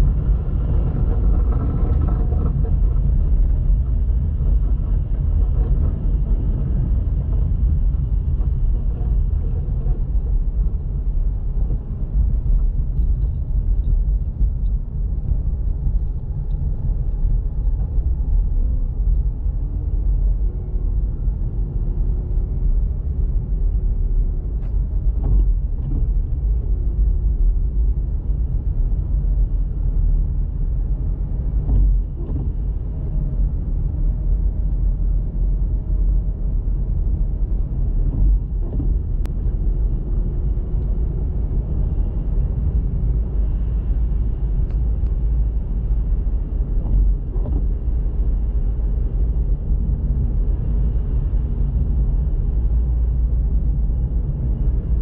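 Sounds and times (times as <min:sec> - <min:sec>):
car engine and road rumble: 0:00.0 - 0:55.0.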